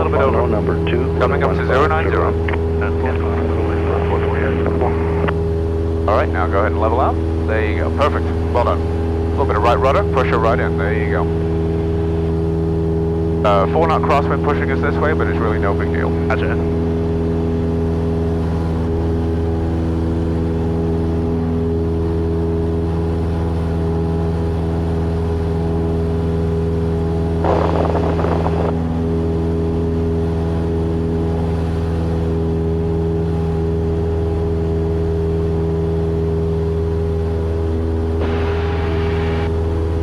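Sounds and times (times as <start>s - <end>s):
piston engine and propeller drone: 0.0s - 40.0s
short burst of noise: 38.2s - 39.5s.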